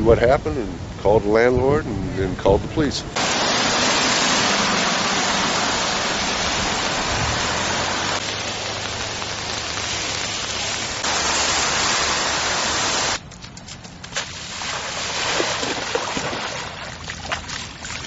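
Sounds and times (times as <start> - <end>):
heavy rain hissing: 3.0 - 13.2.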